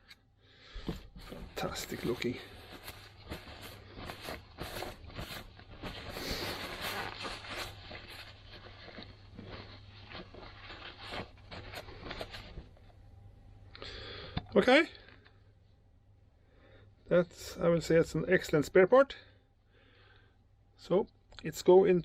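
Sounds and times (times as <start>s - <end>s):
scraping and rustling: 0.8s - 12.9s.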